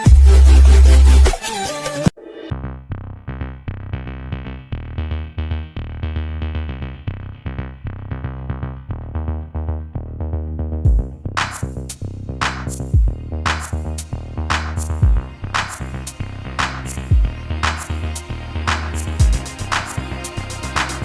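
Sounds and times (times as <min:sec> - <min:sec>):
electronic music with synth: 0:12.4 - 0:21.0.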